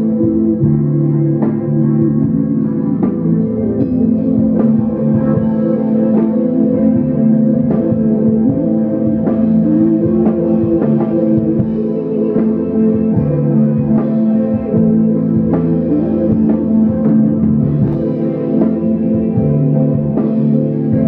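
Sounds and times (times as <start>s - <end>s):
rock band playing: 0.0s - 21.0s.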